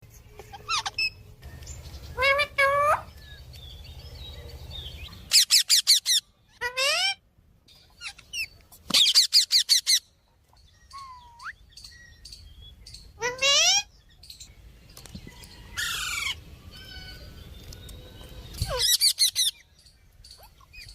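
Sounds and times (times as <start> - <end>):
parrots screeching: 0.5 - 1.2, 5.3 - 7.2, 9.0 - 10.0, 13.2 - 13.9, 15.8 - 17.2, 18.6 - 19.6.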